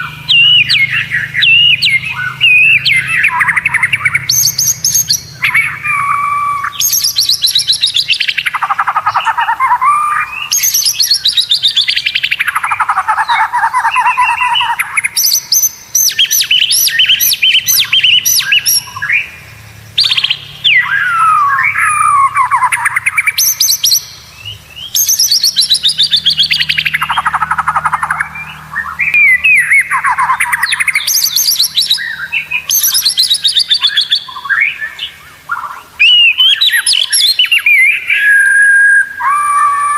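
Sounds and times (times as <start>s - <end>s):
bird singing rattling trills: 0.0s - 39.9s.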